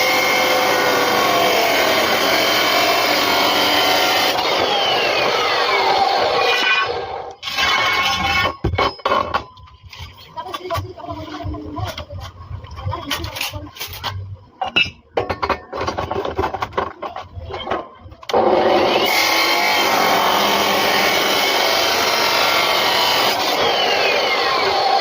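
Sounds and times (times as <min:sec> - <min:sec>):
knocks and scrapes: 0:07.4 - 0:18.2
cut-off disc grinding steel: 0:18.3 - 0:25.0.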